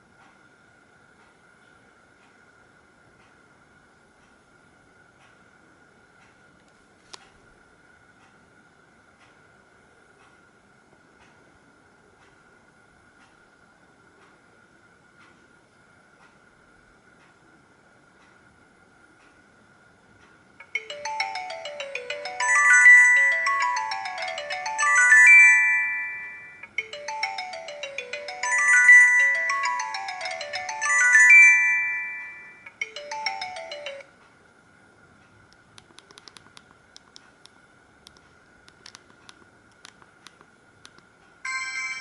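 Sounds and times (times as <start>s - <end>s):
mobile phone ringtone melody: 20.6s - 34.1s, 41.5s - 42.0s.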